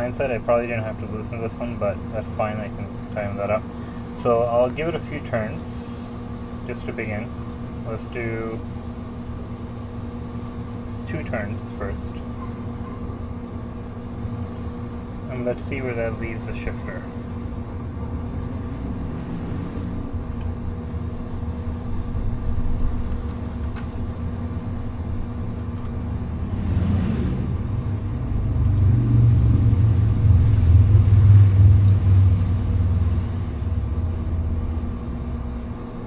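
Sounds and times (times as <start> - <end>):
steady background hum: 0.0 - 36.0
low vehicle rumble: 12.0 - 36.0.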